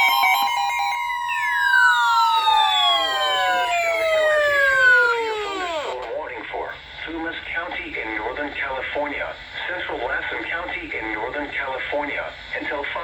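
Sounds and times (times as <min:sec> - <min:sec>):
electronic alert tones sliding down: 0:00.0 - 0:06.1.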